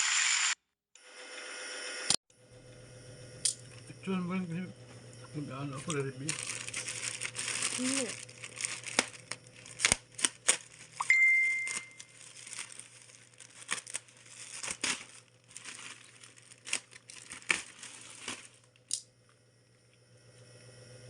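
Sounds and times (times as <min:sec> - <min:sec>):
plastic packaging crinkling: 0:05.8 - 0:18.9.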